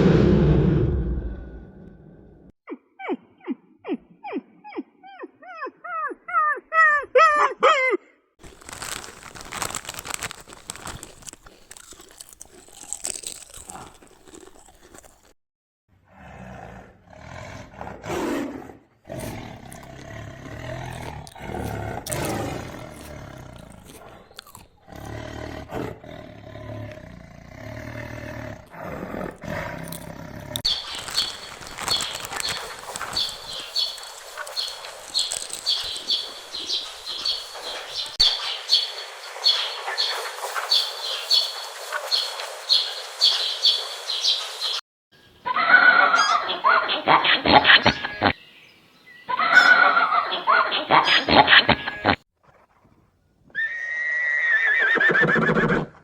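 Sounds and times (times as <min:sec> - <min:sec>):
big cat growling and roaring: 0:00.0 - 0:02.5, 0:16.0 - 0:30.7
short pitched calls: 0:30.7 - 0:43.4.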